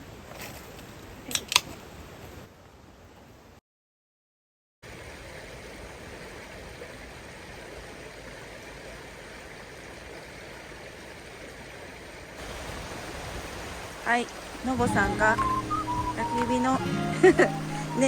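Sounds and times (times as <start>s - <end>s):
river rushing: 4.9s - 18.0s.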